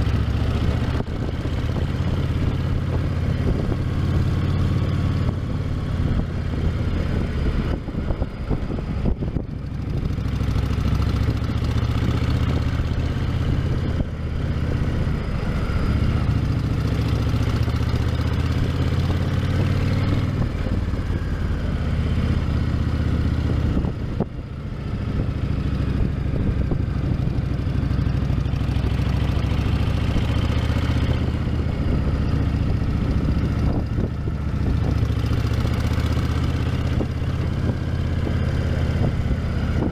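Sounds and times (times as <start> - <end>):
motorcycle engine idling: 20.3 - 39.9.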